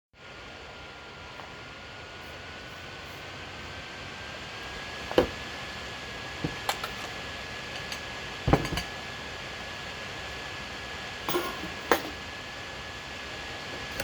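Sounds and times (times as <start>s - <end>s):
dishes and glass clinking: 11.3s - 12.2s.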